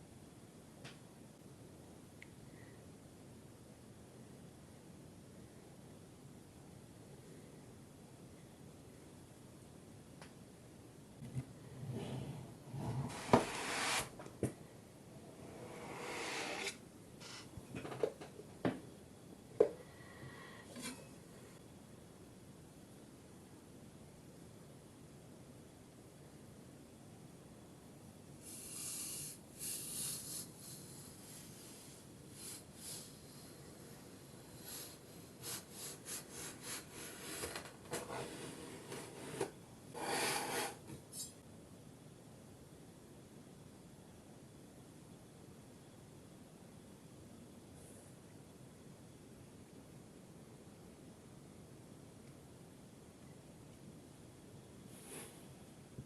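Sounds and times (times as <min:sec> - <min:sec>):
sand scraping and rubbing: 0:12.8 - 0:14.2.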